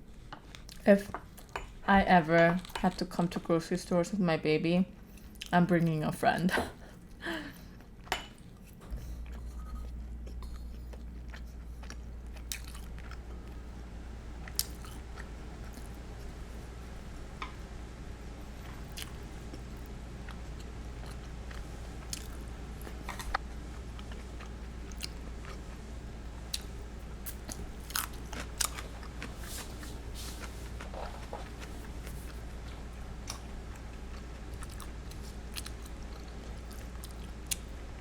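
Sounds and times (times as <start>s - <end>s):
chewing crispy fried chicken: 7.0s - 13.8s, 14.4s - 17.0s, 18.8s - 37.8s.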